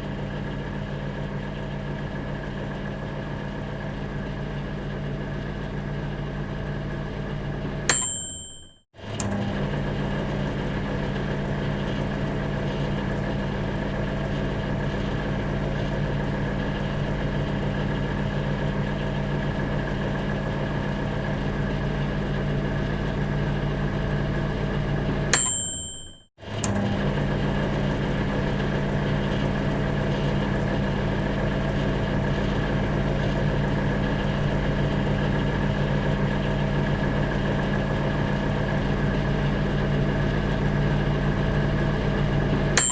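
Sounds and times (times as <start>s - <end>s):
microwave oven humming: 0.0s - 42.9s
microwave bell ding: 7.9s - 8.8s, 25.4s - 26.3s.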